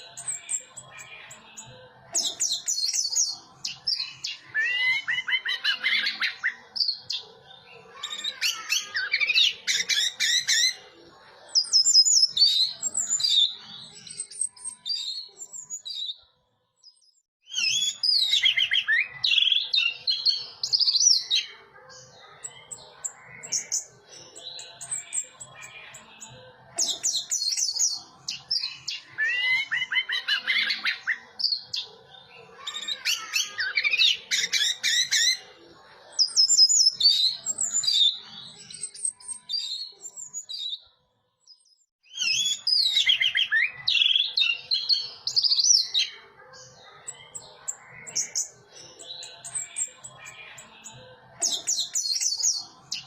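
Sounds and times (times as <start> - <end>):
thrush singing whistles and chirps: 11.6 - 16.2, 16.9 - 21.4, 41.5 - 46.0.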